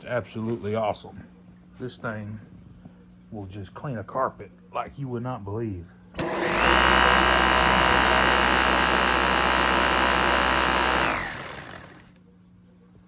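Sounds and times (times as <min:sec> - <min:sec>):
motor winding down: 0:06.2 - 0:12.1
vacuum cleaner whining: 0:06.2 - 0:12.1.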